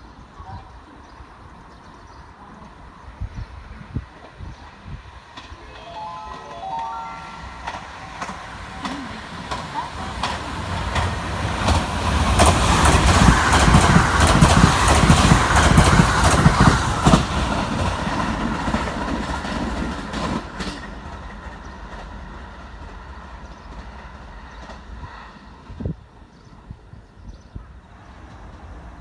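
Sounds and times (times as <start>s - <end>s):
train wheels clacking on rails: 5.0s - 26.0s.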